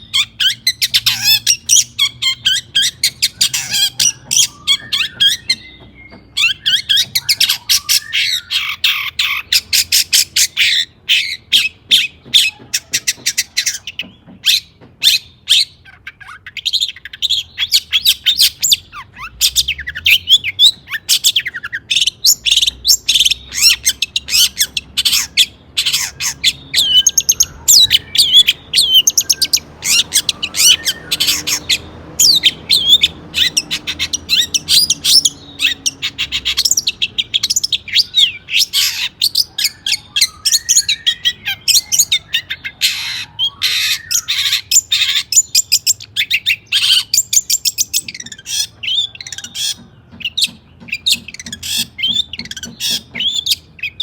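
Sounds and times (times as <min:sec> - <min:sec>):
bird singing chattering notes: 0:00.0 - 0:54.0.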